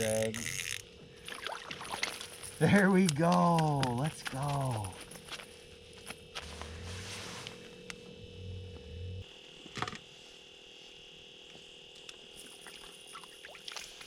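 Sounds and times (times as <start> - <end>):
reel clicks: 0.0 - 0.8
fishing reel whirring: 0.0 - 3.1.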